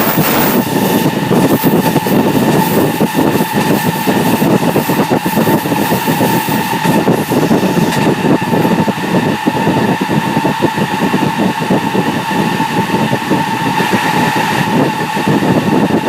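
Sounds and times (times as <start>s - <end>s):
wheels rumbling on rail: 0.0s - 16.0s.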